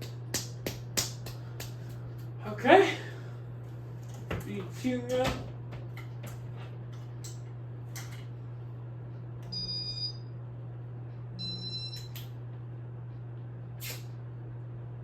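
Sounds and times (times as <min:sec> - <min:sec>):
low electrical hum: 0:00.0 - 0:15.0
short electronic beeps: 0:09.5 - 0:10.2.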